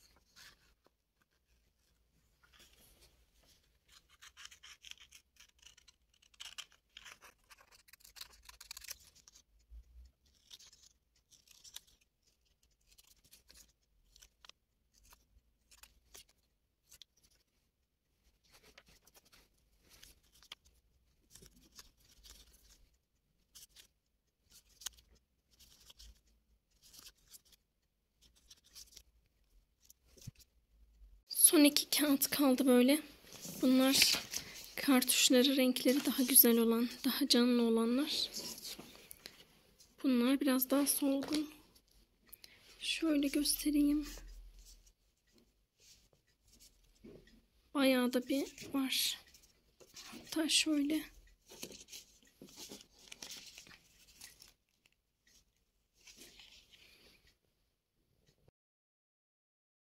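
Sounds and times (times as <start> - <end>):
paper rustling: 0.0 - 17.6, 18.2 - 30.5, 33.2 - 37.3, 38.2 - 39.4, 51.4 - 55.4, 56.0 - 57.2
scissors snipping paper: 3.9 - 17.4.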